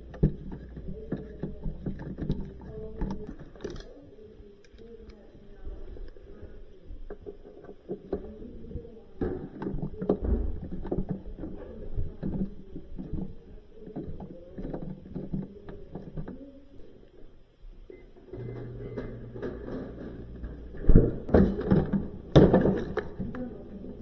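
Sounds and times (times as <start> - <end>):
parts knocking and scraping: 0.0 - 4.0, 18.2 - 24.0.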